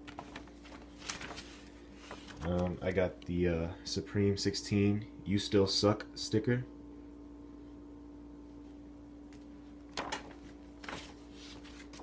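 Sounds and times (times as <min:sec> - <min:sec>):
paper stickers rustling: 0:00.0 - 0:02.9, 0:10.0 - 0:12.0
low electrical hum: 0:00.0 - 0:12.0.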